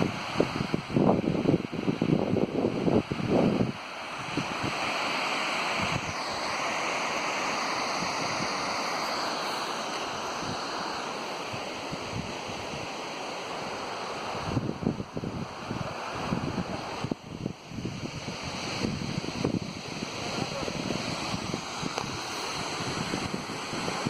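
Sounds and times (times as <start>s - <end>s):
wind buffeting microphone: 0.0s - 4.8s, 14.3s - 24.0s
waterfall roaring: 0.0s - 24.0s.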